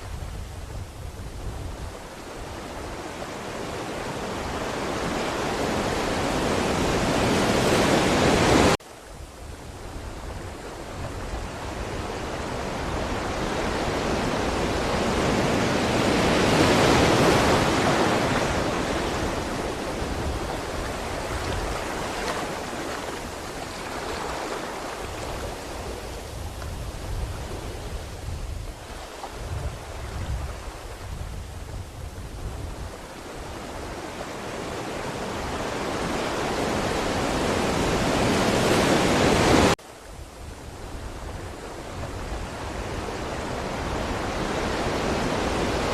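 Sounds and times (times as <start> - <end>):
ocean waves breaking: 1.4 - 8.8, 10.0 - 31.2, 32.4 - 39.8.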